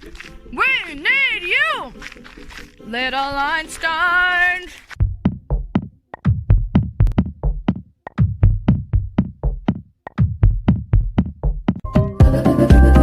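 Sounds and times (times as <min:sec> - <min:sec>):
drum machine beat: 0:05.0 - 0:13.0.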